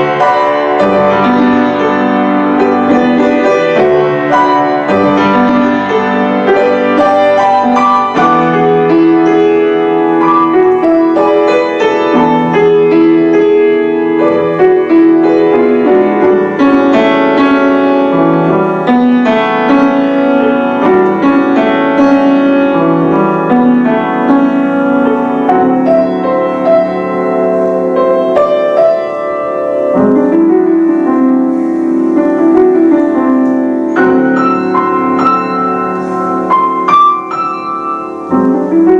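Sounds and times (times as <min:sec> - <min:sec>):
classical piano duet: 0:00.0 - 0:38.9.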